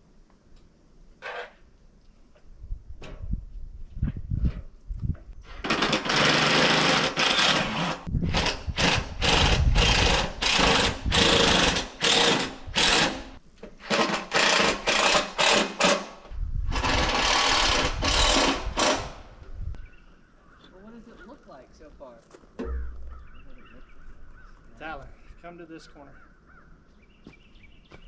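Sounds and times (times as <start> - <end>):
power drill driving fasteners: 5.4 - 19.4.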